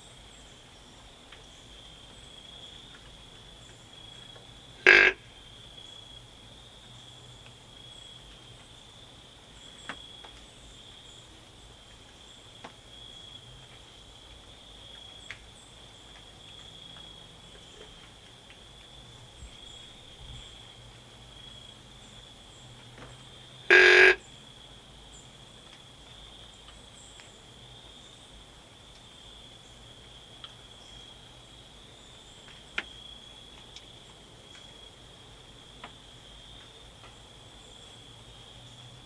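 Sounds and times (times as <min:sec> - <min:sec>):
insects chirping chorus: 0:00.0 - 0:39.0
faint ticks: 0:01.3 - 0:05.2, 0:25.5 - 0:27.6, 0:28.7 - 0:31.2, 0:32.4 - 0:34.9
loud short call: 0:04.8 - 0:05.2, 0:23.7 - 0:24.2.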